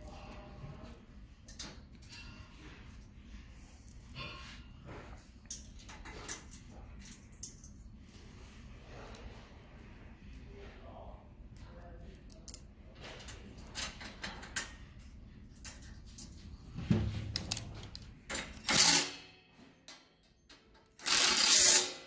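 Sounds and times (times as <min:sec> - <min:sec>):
metal parts clattering: 0:17.2 - 0:19.2, 0:21.0 - 0:22.0.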